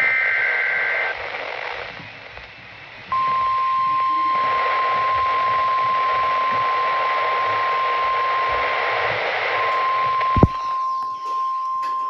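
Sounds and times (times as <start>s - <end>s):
radio static hiss: 0.0s - 9.7s, 10.4s - 10.6s
sharp click: 10.4s - 10.6s.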